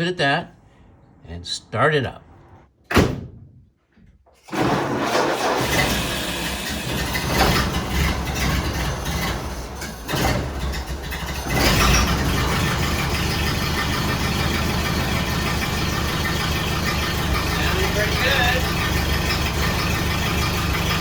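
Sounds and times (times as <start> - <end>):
car engine starting and idling: 4.4 - 21.0.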